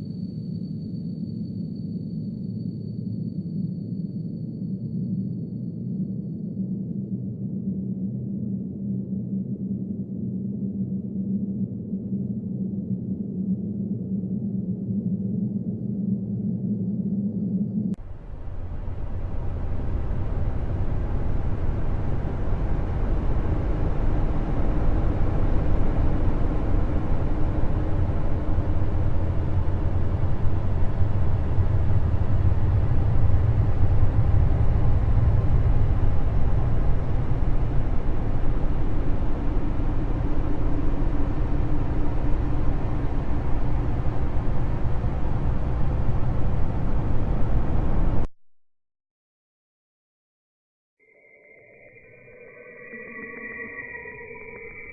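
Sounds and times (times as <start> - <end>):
faint hum: 0.0 - 48.3, 51.0 - 54.9
steady deep drone: 10.9 - 48.3.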